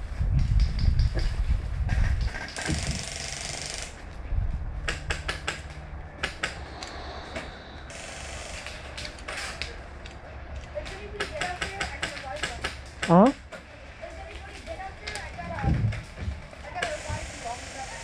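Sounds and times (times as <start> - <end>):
wind rumble on microphone: 0.0 - 3.2, 4.0 - 7.9, 14.8 - 17.3.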